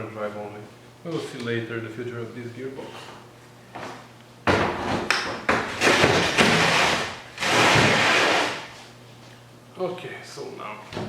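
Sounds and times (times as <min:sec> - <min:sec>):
parts knocking on workbench: 0:04.4 - 0:06.6.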